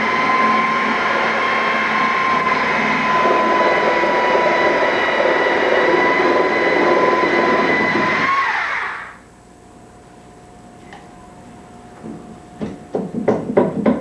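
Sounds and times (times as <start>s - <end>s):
motor whining and spinning down: 0.0s - 9.2s.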